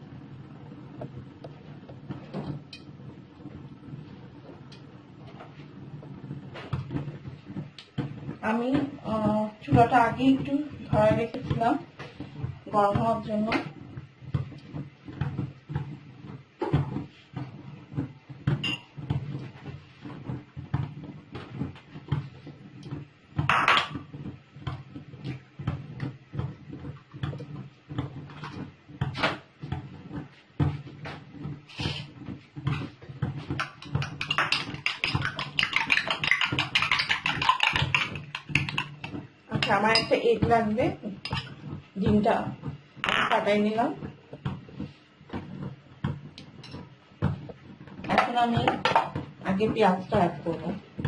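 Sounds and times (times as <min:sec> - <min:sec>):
utensils knocking and clicking: 0:33.4 - 0:41.6
metal clattering on a dish: 0:33.6 - 0:40.1.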